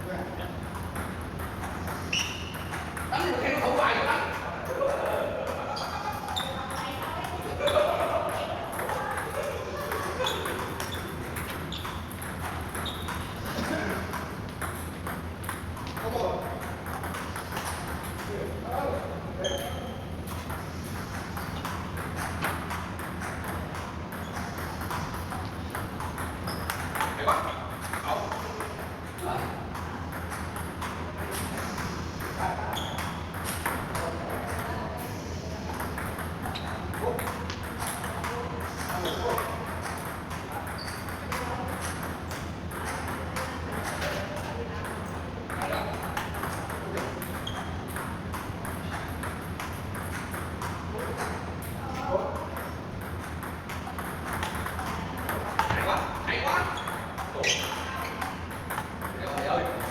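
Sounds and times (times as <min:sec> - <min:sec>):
table tennis ball ticking: 0:00.6 - 0:03.2, 0:10.2 - 0:13.5, 0:19.5 - 0:29.2, 0:35.7 - 0:51.8, 0:52.5 - 0:59.9.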